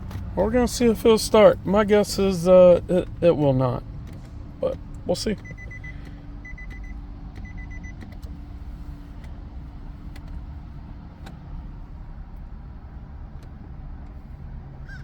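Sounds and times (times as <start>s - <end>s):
electronic warning chime beeping: 5.4s - 8.0s.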